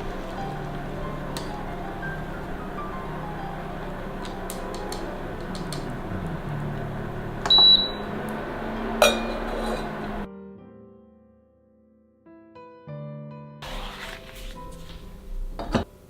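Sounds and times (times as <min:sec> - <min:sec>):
oven humming: 0:00.0 - 0:10.3, 0:13.6 - 0:16.0
soft piano music: 0:00.0 - 0:16.0
high oven beep: 0:07.4 - 0:09.4.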